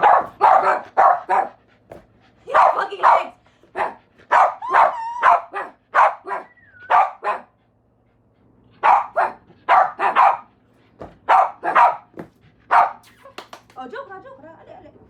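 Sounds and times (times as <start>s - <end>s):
dog barking: 0.0s - 1.6s, 2.5s - 7.6s, 8.8s - 10.5s, 11.2s - 13.1s
dog whining: 3.8s - 7.4s.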